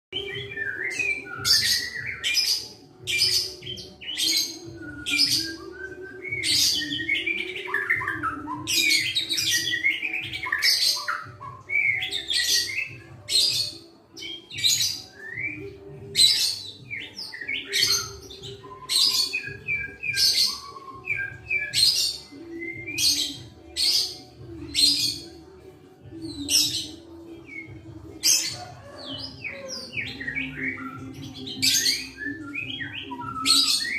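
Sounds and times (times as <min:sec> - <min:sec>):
bird singing whistled phrases: 0:00.2 - 0:13.5, 0:16.3 - 0:24.0.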